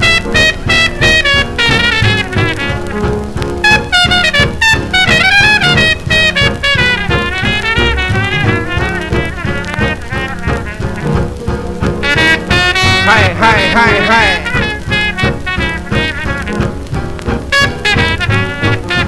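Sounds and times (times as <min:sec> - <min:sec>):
band playing instrumental: 0:00.0 - 0:19.0.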